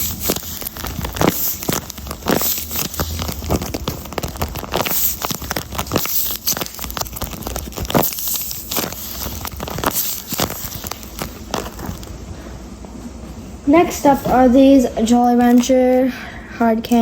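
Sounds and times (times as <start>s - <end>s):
paper squishy crinkling: 0.0s - 12.2s.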